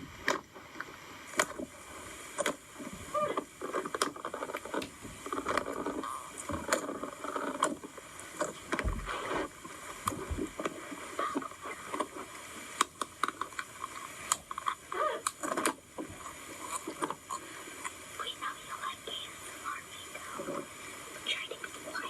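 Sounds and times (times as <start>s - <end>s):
dull low thumps: 8.8s - 9.3s, 10.1s - 10.6s.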